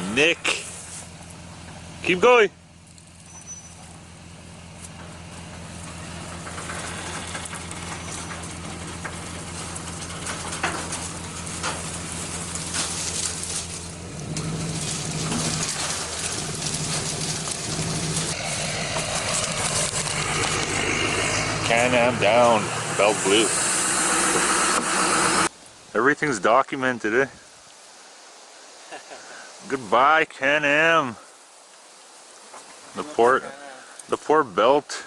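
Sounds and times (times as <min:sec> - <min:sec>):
quad engine droning: 0:00.0 - 0:25.5.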